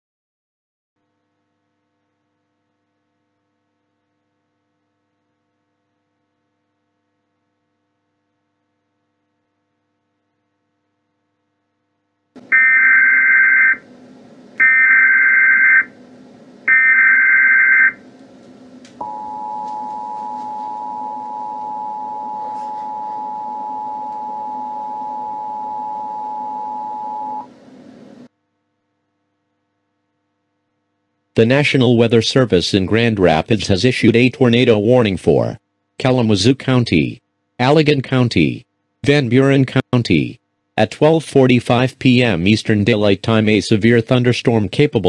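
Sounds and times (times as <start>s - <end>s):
faint hum: 1.0s - 45.0s
two-tone attention signal: 12.5s - 13.8s, 14.6s - 15.9s, 16.7s - 18.0s, 19.0s - 27.5s.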